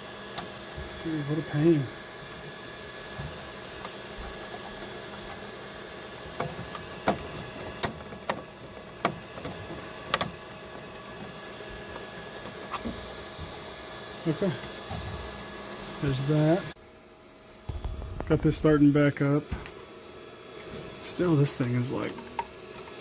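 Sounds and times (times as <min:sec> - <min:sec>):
steady hum: 0:00.0 - 0:23.0
plastic parts clicking and knocking: 0:03.2 - 0:11.3.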